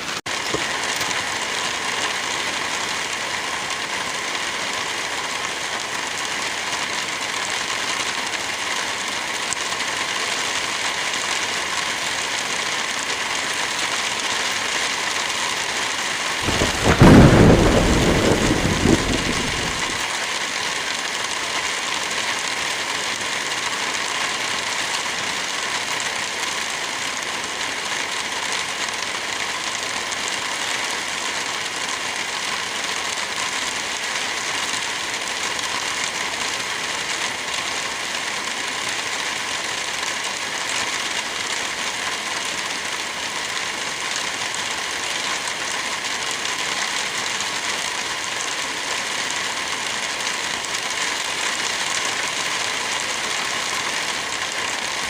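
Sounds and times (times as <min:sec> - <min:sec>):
light rain falling: 0:00.0 - 0:55.0
wind through trees: 0:13.2 - 0:23.1.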